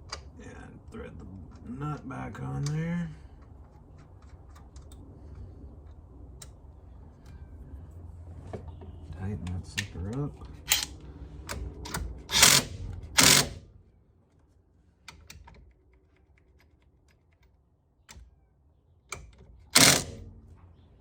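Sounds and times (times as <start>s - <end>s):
harsh tool bursts: 12.3s - 13.6s, 19.7s - 20.3s.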